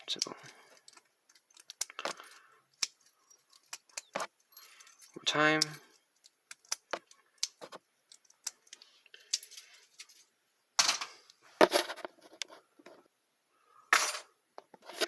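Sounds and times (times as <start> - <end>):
padlock metallic rattles: 0.2 - 10.3.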